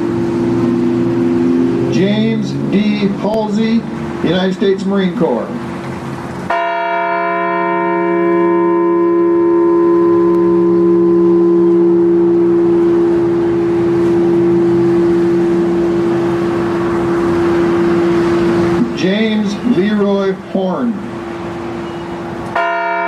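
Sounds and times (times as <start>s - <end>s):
large bell ringing: 6.5s - 20.0s.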